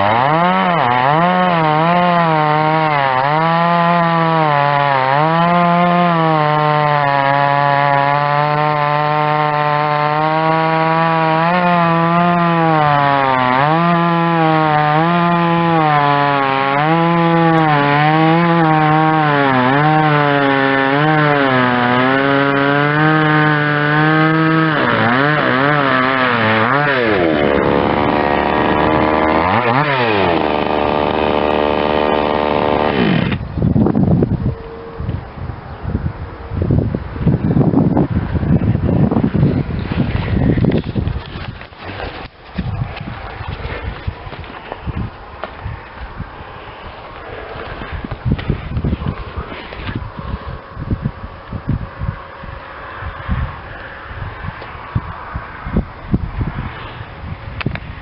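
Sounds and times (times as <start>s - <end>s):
chainsaw cutting wood: 0.0s - 33.8s, 38.1s - 50.6s.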